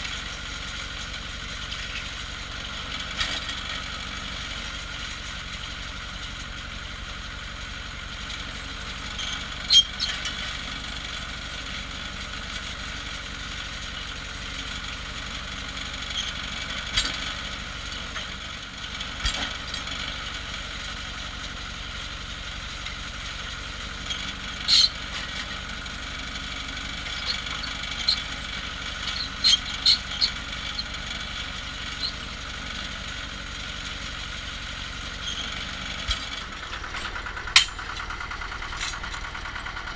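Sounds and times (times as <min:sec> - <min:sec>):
drilling rig engine running: 0:00.0 - 0:39.9
sharp metal clanks: 0:35.2 - 0:39.2.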